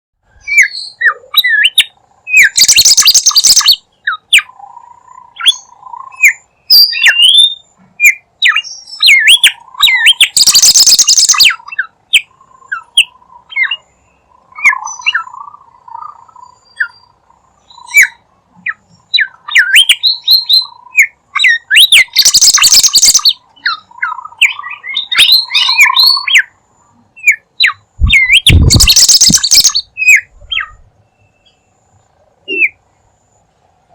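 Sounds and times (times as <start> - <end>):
bird chirping and whistling: 0.4 - 4.5, 5.4 - 13.9, 14.6 - 15.4, 17.7 - 26.5, 27.2 - 31.6
harsh buzzy bird call: 0.6 - 7.5, 9.0 - 13.8, 19.4 - 26.5, 28.2 - 30.8.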